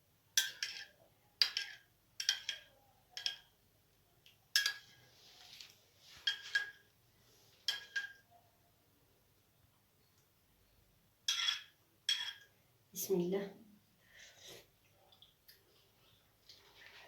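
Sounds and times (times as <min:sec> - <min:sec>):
metal utensil clinking on dish: 0:07.7 - 0:08.2.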